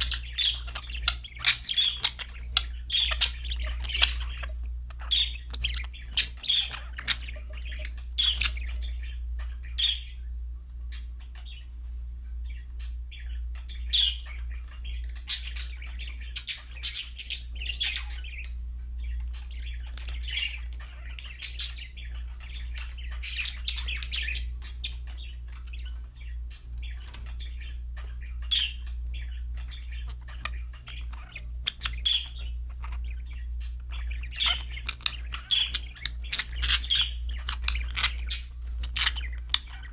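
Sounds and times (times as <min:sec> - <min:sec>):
budgerigar squawks: 0:00.0 - 0:08.8, 0:27.9 - 0:39.9
budgerigars chirping: 0:00.0 - 0:39.9
steady low hum: 0:00.0 - 0:39.9.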